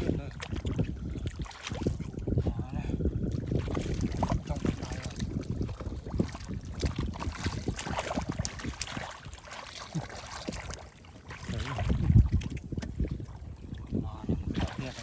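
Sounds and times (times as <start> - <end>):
shallow water splashing: 0.0 - 15.0.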